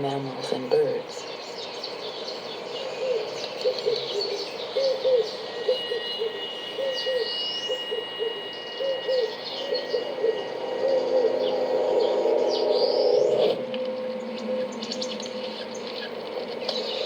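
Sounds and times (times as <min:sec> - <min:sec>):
low hooting calls: 0:00.8 - 0:17.0
steady high-pitched tone: 0:01.9 - 0:17.0
high chirps: 0:04.2 - 0:17.0.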